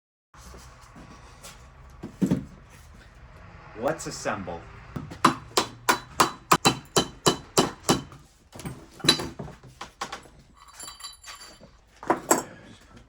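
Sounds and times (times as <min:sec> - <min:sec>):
hammer tapping: 0:05.0 - 0:08.2.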